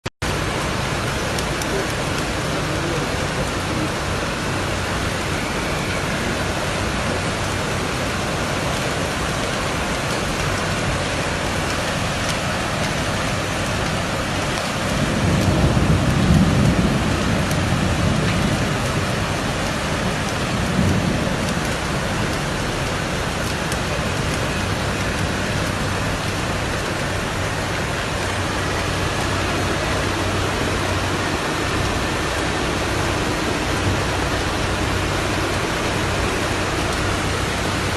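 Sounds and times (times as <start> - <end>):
heavy rain pouring: 0.2 - 37.9.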